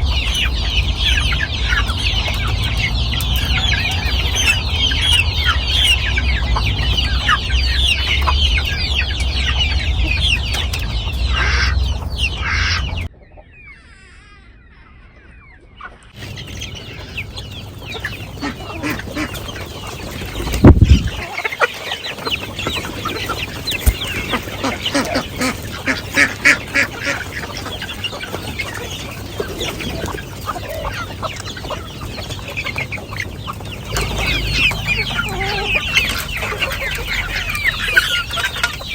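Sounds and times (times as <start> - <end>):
chickens clucking: 0.0 - 38.9
low rumble: 20.6 - 21.2.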